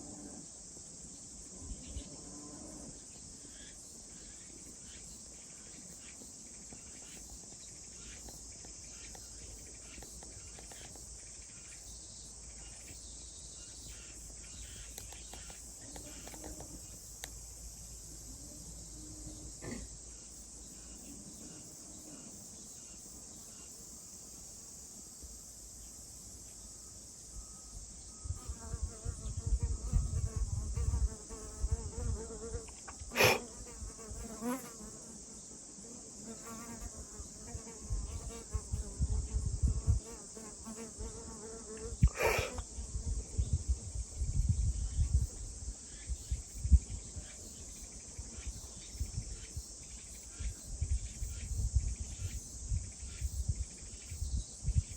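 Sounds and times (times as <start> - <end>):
crickets chirping: 0.0 - 54.9
flying insect buzzing: 28.4 - 43.5.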